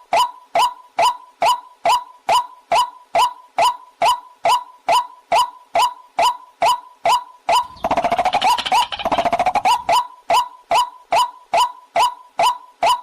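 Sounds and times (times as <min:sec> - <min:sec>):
bird chattering run: 0:07.6 - 0:09.9.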